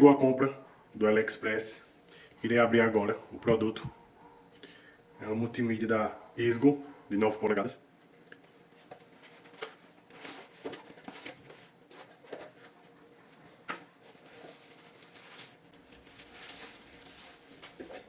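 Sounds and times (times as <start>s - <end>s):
package rustling: 8.5s - 18.0s.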